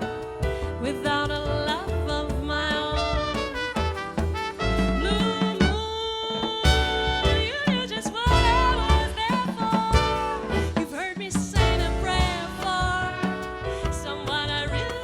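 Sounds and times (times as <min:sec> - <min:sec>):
swing jazz ensemble: 0:00.0 - 0:15.0.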